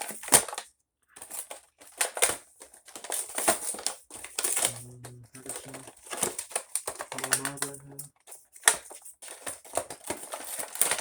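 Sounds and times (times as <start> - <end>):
plastic packaging crinkling: 1.9 - 11.0.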